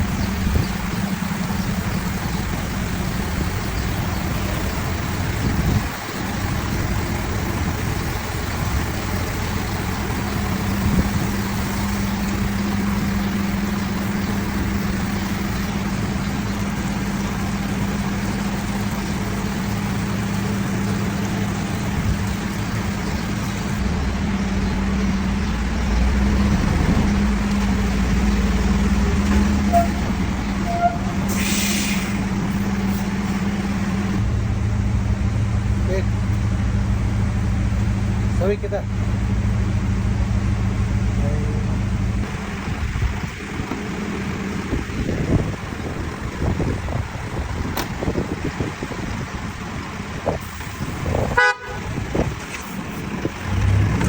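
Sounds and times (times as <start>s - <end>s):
bus wash hiss: 0.0s - 23.9s, 25.0s - 34.2s, 42.2s - 54.0s
bus engine drone: 0.0s - 54.0s.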